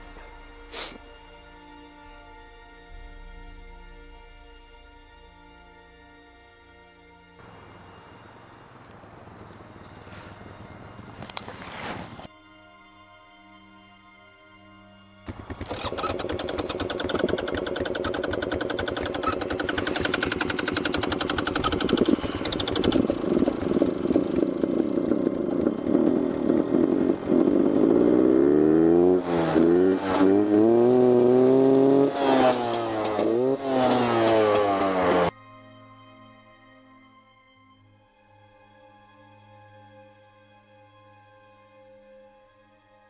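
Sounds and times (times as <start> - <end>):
small engine revving: 15.3 - 35.3.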